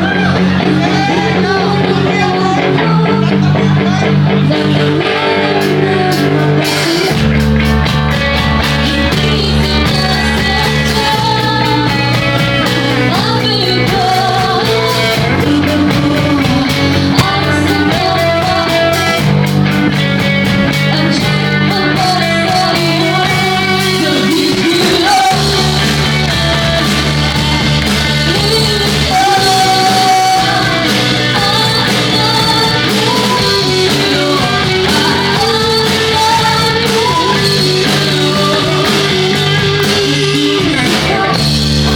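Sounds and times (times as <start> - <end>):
woman singing lead vocal: 0.0 - 7.5, 8.4 - 20.0, 20.7 - 41.9
bass guitar: 0.0 - 41.9
drums: 0.0 - 41.9
electric guitars: 0.0 - 41.9.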